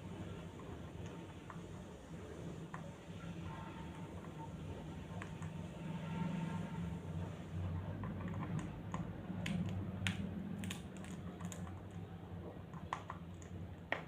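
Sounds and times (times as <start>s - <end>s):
light clicks and taps: 8.0s - 12.1s.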